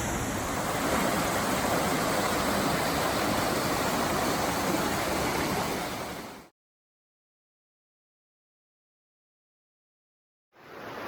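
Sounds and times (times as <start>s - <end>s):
rushing river water: 0.0s - 6.5s, 10.6s - 11.0s.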